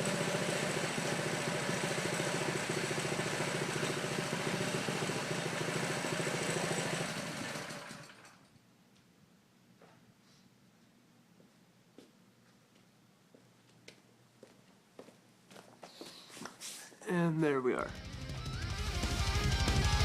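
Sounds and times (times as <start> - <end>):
single-cylinder engine running: 0.0 - 8.5, 17.9 - 20.0.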